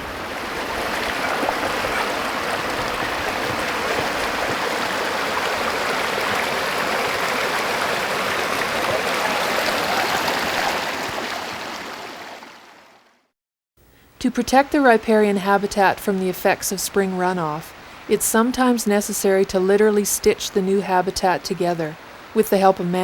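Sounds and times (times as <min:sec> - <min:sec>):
creek water rushing: 0:00.0 - 0:13.1.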